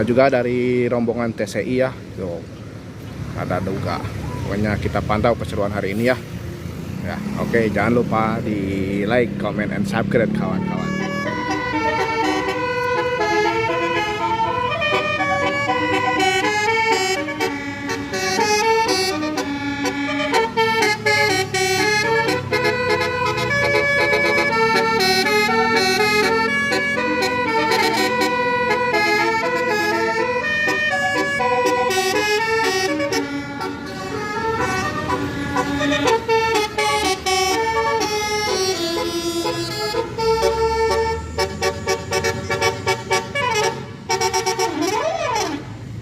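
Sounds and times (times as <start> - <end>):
vehicle noise: 0.0 - 46.0
musical air horn melody: 10.4 - 45.7.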